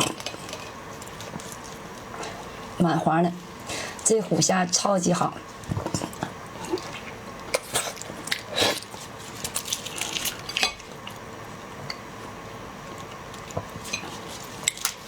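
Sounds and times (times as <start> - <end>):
prawns being peeled: 6.7 - 10.6.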